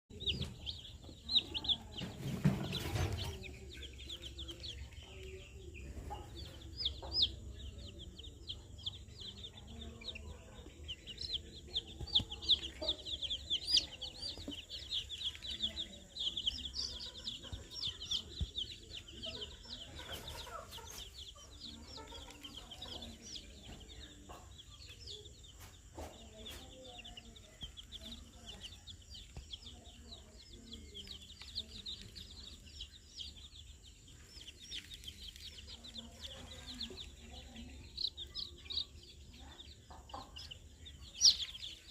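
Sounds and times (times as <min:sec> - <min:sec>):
hen clucking: 0:00.1 - 0:24.7, 0:34.8 - 0:41.9
chicks peeping: 0:00.1 - 0:41.9.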